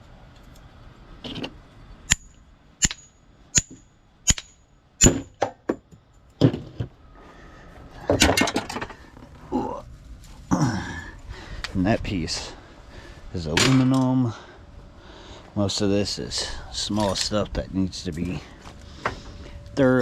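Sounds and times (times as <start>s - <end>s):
ringing metal strikes: 2.1s - 5.4s.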